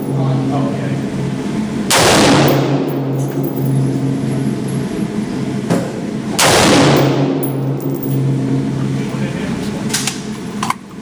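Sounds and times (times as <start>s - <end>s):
steady low hum: 0.0s - 11.0s
rifle shots: 1.9s - 3.1s, 6.4s - 7.7s.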